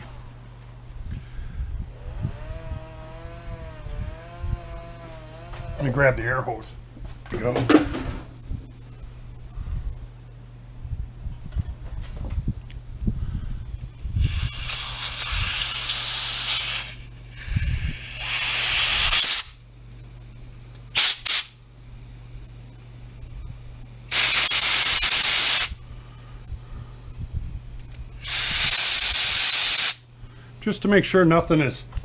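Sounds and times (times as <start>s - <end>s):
compressed air blow gun hissing: 13.2s - 19.6s, 21.0s - 21.6s, 24.1s - 30.1s.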